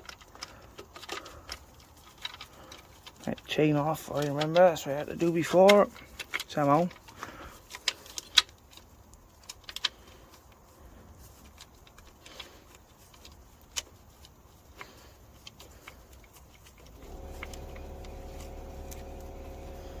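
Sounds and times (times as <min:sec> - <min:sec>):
steady hum: 0:17.0 - 0:20.0.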